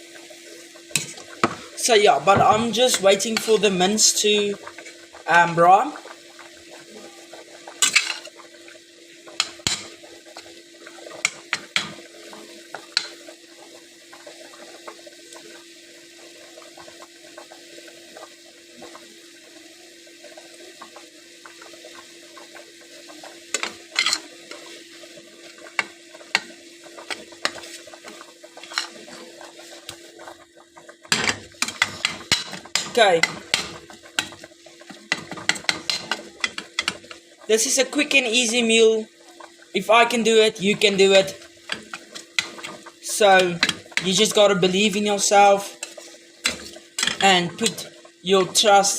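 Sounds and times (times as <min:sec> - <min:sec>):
meat sizzling in a pan: 0:00.0 - 0:48.9
spatula scraping a pan: 0:00.9 - 0:01.6.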